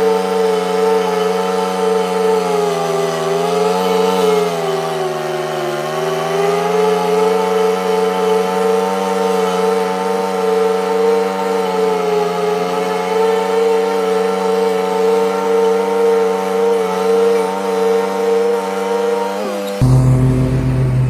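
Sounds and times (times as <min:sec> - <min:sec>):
lawn mower engine running: 0:19.8 - 0:21.0.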